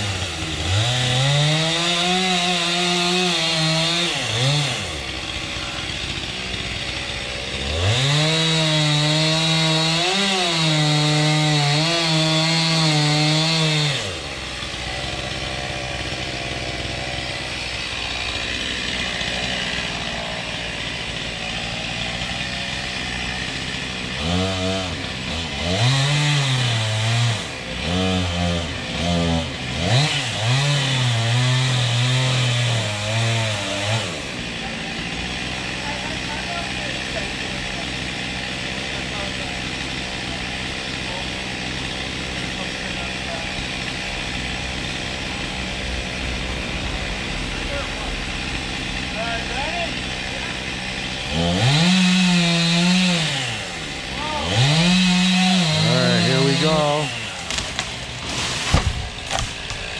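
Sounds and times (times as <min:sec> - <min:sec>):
chainsaw cutting wood: 0:00.0 - 0:59.9.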